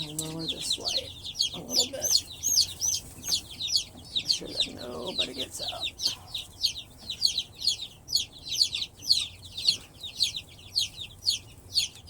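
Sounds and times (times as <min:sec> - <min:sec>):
baby chicks peeping: 0:00.0 - 0:12.0.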